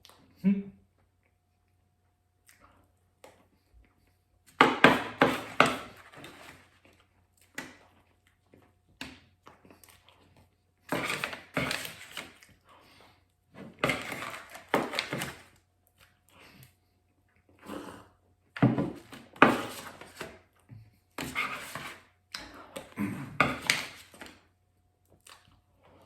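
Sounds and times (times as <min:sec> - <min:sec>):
cutlery scraping a pie dish: 0:04.8 - 0:06.7, 0:10.9 - 0:12.3, 0:13.6 - 0:15.4, 0:19.3 - 0:20.3, 0:21.2 - 0:22.1.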